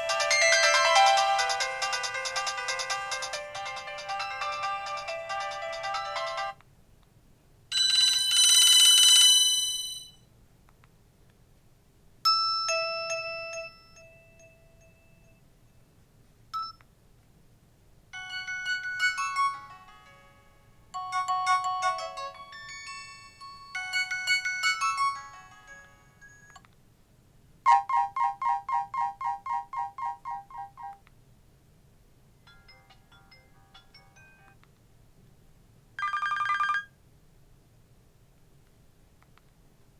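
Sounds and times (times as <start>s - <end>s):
phone ringtone melodies: 0.0s - 6.6s, 7.7s - 10.2s, 12.3s - 15.2s, 18.2s - 26.6s, 27.7s - 31.0s, 32.4s - 34.6s, 36.0s - 36.9s.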